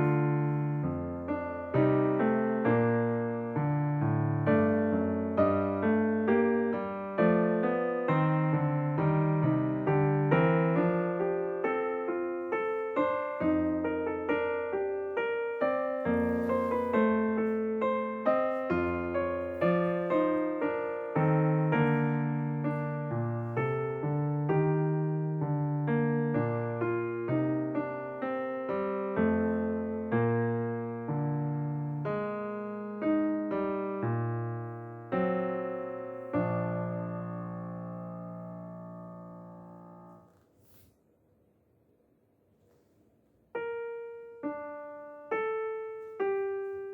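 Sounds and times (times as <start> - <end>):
solo piano melody: 0.0 - 40.8, 43.5 - 46.9.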